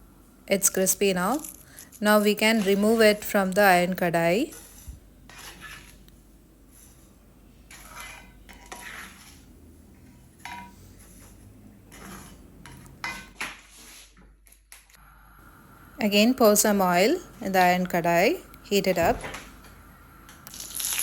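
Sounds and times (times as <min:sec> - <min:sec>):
metal utensil scraping in iron pan: 0:04.5 - 0:06.0, 0:07.7 - 0:14.1.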